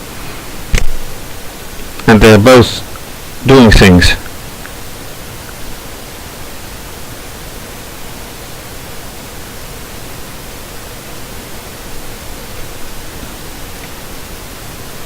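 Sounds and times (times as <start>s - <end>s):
background hiss: 0.0s - 15.0s
faint constant hum: 0.0s - 15.0s.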